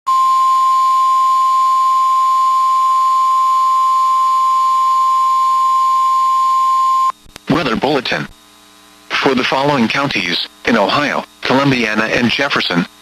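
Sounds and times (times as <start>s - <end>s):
steady alarm beep: 0.1s - 7.1s.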